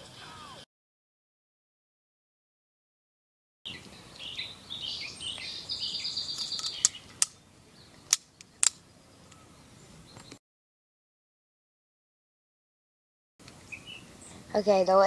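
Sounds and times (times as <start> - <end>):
birds chirping: 3.7 - 10.4, 13.4 - 15.0.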